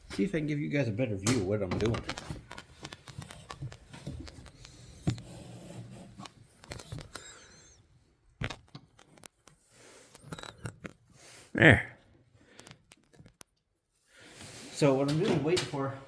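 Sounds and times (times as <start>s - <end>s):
camera handling rustling and scraping: 1.8s - 7.7s.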